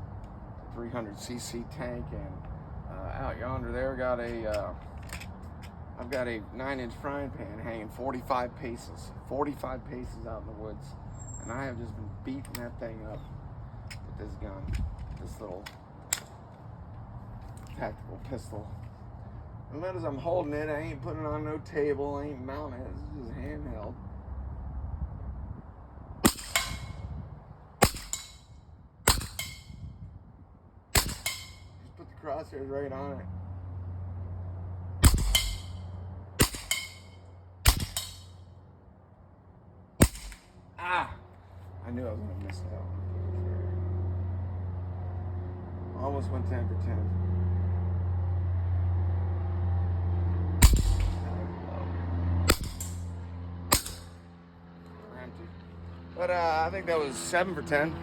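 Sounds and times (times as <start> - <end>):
air pistol shots: 26.2 - 27.1, 27.8 - 28.4, 29.1 - 29.8, 31.0 - 31.8, 35.0 - 38.4, 40.0 - 40.5, 50.6 - 51.3, 52.5 - 53.1, 53.7 - 54.2
steady low hum: 33.6 - 42.0, 50.6 - 51.6.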